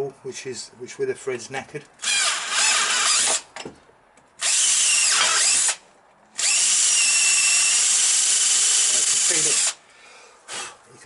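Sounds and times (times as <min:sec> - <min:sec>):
power drill drilling aluminium: 0:02.0 - 0:03.4, 0:04.4 - 0:05.8, 0:06.4 - 0:09.8.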